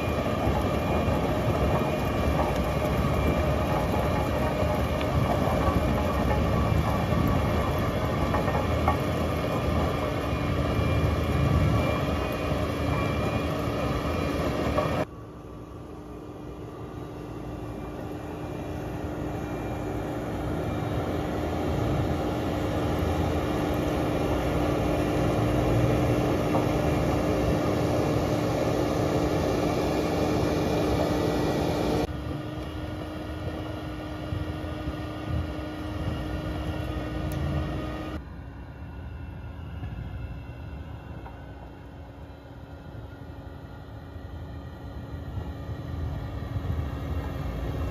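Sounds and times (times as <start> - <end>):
mulcher rotor noise: 0.0 - 15.1, 15.8 - 38.2
track loader engine: 0.0 - 47.9.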